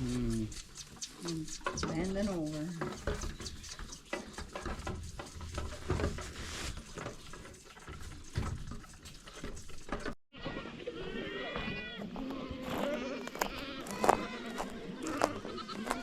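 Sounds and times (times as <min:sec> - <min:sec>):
goats bleating: 0:10.4 - 0:16.0.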